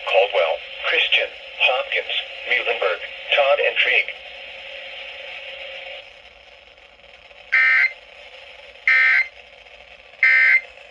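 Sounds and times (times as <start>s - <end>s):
radio hiss: 0.0s - 6.1s, 7.5s - 8.1s, 8.9s - 9.3s, 10.2s - 10.7s
warbling data tones: 7.6s - 8.0s, 8.9s - 9.3s, 10.2s - 10.7s.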